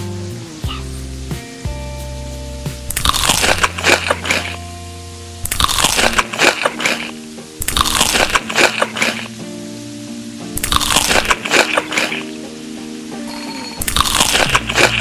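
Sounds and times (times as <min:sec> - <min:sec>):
background music with held notes: 0:00.0 - 0:15.0
crisp food crunching: 0:02.9 - 0:04.6, 0:05.5 - 0:09.2, 0:10.6 - 0:12.3, 0:13.8 - 0:15.0.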